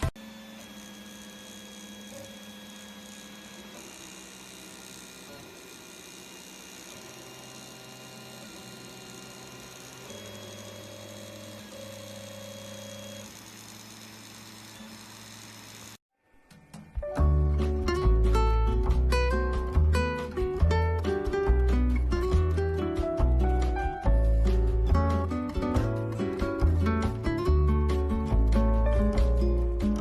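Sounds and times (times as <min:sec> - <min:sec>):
stepper motors whining: 0:00.0 - 0:16.0.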